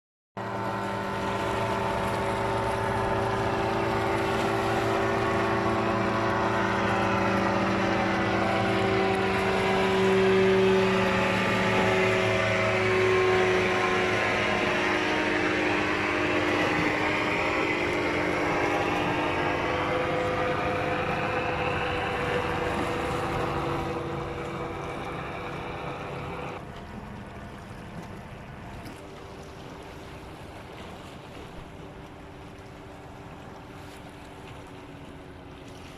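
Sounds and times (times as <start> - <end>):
motorboat engine running: 0.4 - 35.9.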